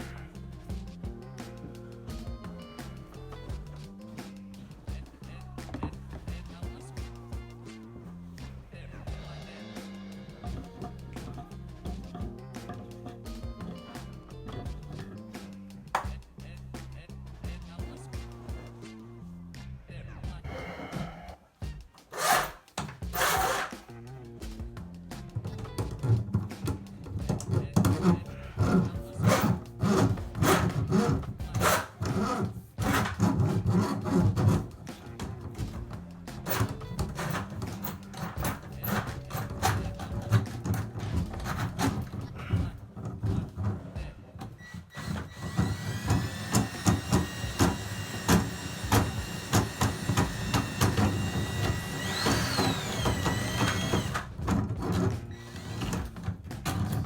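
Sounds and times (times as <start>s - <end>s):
drain cable rasping and scraping: 1.5s - 16.6s, 22.1s - 57.0s
drain cleaning machine whine: 44.6s - 56.1s.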